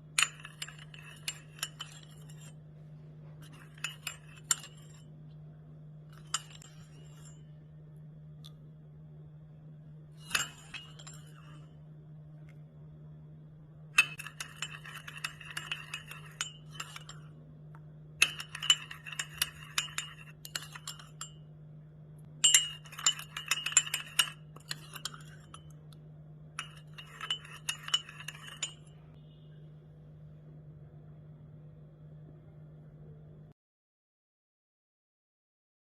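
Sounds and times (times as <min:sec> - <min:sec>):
low hum: 0:00.0 - 0:33.6
spoon clinking against glass: 0:00.1 - 0:02.6, 0:03.4 - 0:05.1, 0:06.1 - 0:07.4, 0:10.2 - 0:11.7, 0:14.0 - 0:17.3, 0:18.2 - 0:21.4, 0:22.4 - 0:25.9, 0:26.6 - 0:29.0.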